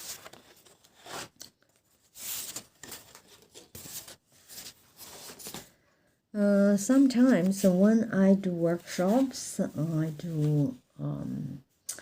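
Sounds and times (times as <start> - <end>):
paper rustling and sliding: 0.0 - 5.8.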